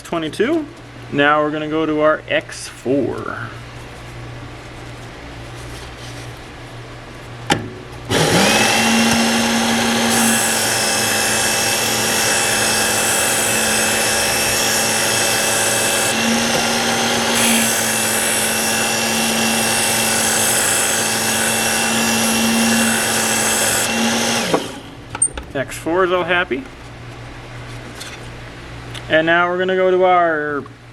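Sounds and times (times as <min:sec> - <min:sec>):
belt sharpener motor whine: 0:08.1 - 0:25.0.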